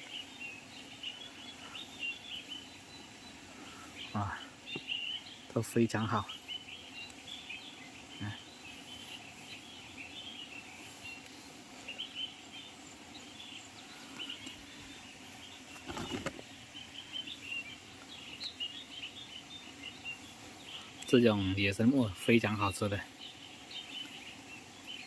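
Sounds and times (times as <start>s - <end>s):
small birds chirping: 0.0s - 25.0s
brief rustle: 15.7s - 16.4s.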